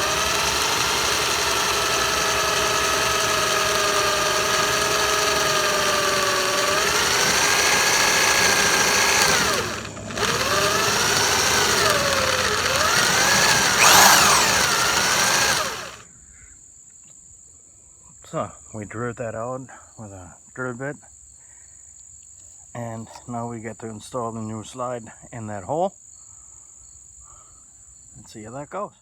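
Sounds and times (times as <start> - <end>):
electric drill whining: 0.0 - 16.0.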